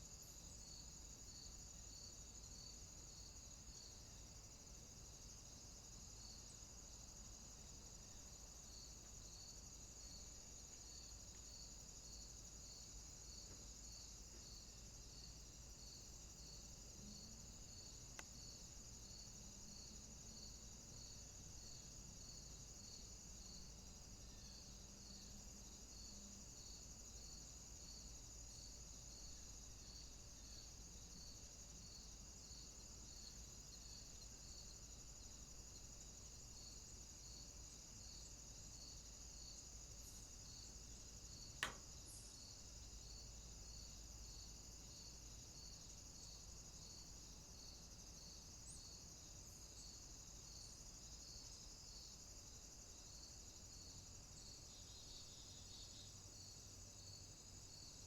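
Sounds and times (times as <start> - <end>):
high-pitched insect trill: 0.0 - 58.0
insect chirping: 0.0 - 58.0
sharp click: 41.6 - 42.0.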